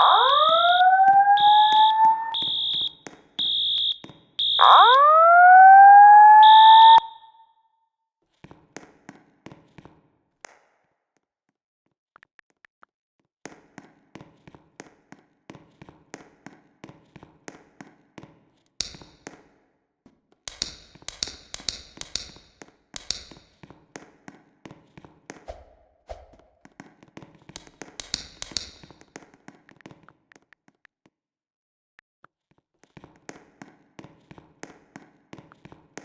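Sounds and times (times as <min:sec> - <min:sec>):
rapid regular tapping: 0:27.5 - 0:29.0
sharp bright clicks: 0:28.0 - 0:28.8.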